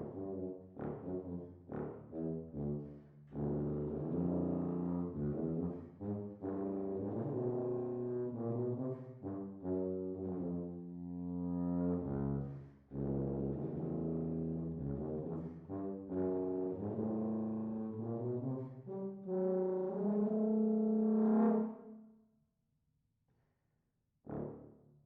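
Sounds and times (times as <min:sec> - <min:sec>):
solo low brass instrument: 0:00.0 - 0:22.0, 0:24.2 - 0:25.0.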